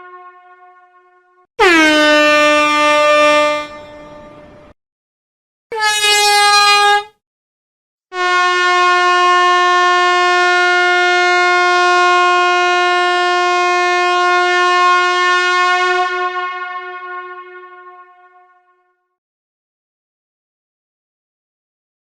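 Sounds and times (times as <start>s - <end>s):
air horn blasts: 0.0s - 4.7s, 5.7s - 7.2s, 8.1s - 18.8s.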